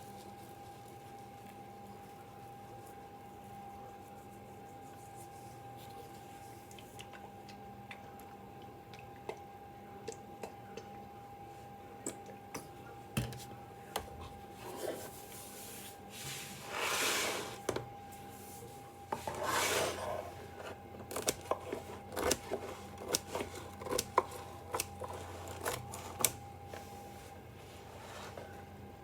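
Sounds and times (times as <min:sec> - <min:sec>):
faint steady hum: 0:00.0 - 0:29.0
scrapes on hard surface: 0:14.6 - 0:17.7, 0:18.6 - 0:20.8.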